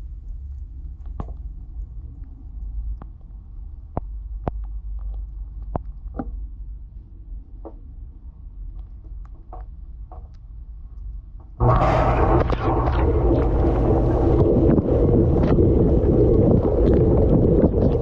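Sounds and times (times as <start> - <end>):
dishwasher hum: 11.6 - 18.0.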